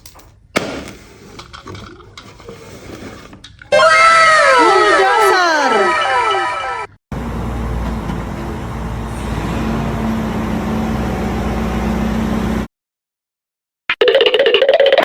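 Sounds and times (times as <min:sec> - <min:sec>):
vehicle engine running: 0:07.1 - 0:12.7.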